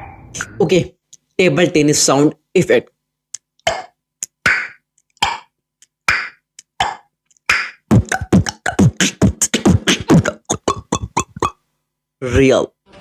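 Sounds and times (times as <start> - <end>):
beatboxed mouth pops and clicks: 3.3 - 11.6.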